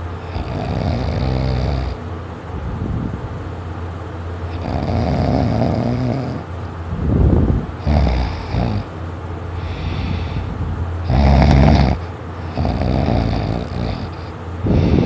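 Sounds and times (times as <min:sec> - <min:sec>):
person snoring heavily: 0:00.0 - 0:02.0, 0:04.5 - 0:06.5, 0:07.8 - 0:08.9, 0:09.6 - 0:15.0.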